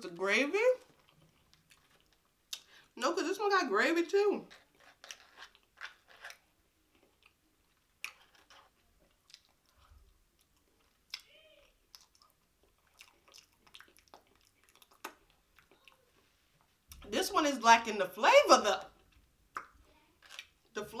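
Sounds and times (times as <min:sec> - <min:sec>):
person chewing: 0:00.8 - 0:02.7, 0:04.7 - 0:16.3, 0:19.0 - 0:20.7
wet mouth smacks and clicks: 0:11.9 - 0:15.3, 0:19.5 - 0:20.5.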